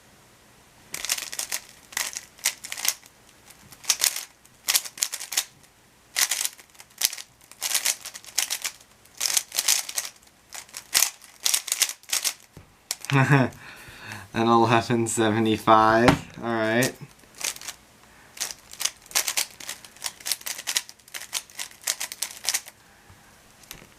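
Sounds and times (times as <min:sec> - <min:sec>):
plastic cube clicking: 0:18.4 - 0:22.7.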